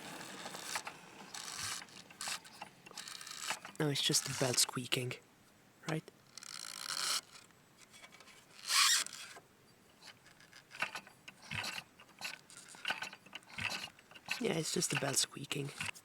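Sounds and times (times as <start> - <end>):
moped drive belt squeaking: 0.0 - 4.7, 8.2 - 9.4, 10.0 - 16.0.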